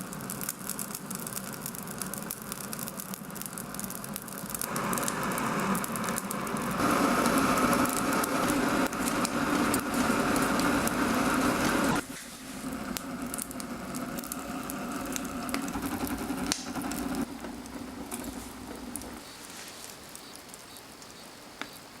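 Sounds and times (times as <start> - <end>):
wood fire crackling: 0.0 - 22.0
loud noise: 4.0 - 19.2.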